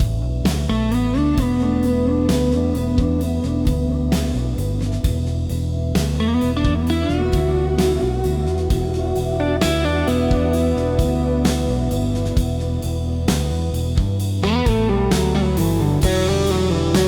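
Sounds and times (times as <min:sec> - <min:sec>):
bass line: 0:00.0 - 0:17.0
sliding electric guitar lead: 0:06.2 - 0:13.3, 0:14.4 - 0:17.0.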